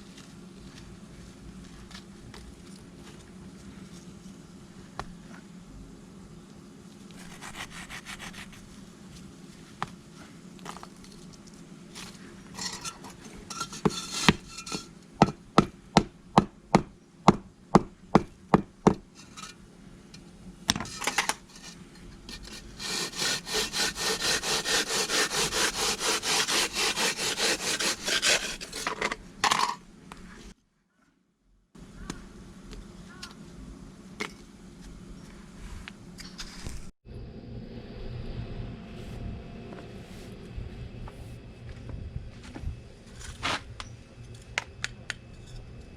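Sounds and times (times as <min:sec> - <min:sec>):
scraping against brick: 0:12.0 - 0:14.9, 0:20.8 - 0:29.8.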